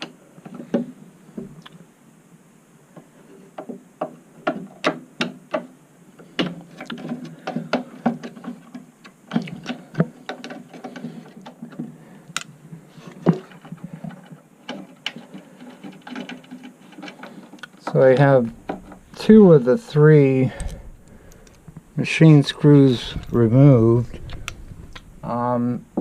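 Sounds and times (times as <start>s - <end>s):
hand tools clicking and tapping: 6.4s - 12.5s, 13.3s - 19.2s.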